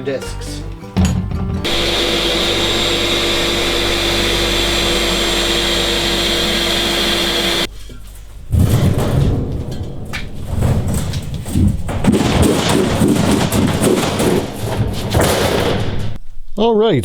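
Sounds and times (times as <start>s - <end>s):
power tool cutting disc whine: 1.7s - 7.7s.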